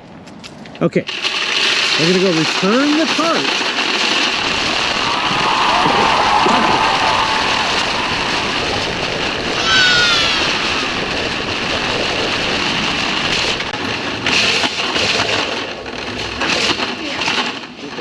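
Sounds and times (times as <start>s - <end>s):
high squeal: 4.3s - 12.8s.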